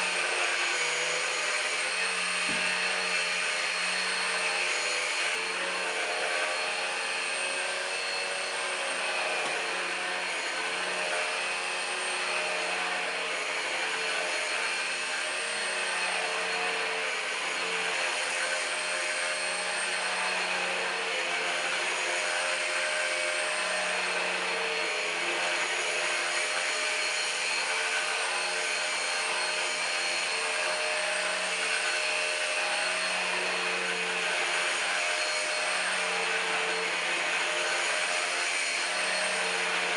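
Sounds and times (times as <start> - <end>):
stick vacuum running: 0.0 - 18.0.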